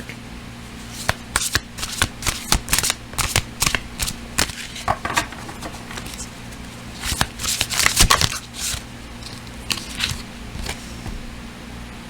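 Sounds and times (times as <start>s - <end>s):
cards being shuffled: 0.9s - 10.9s.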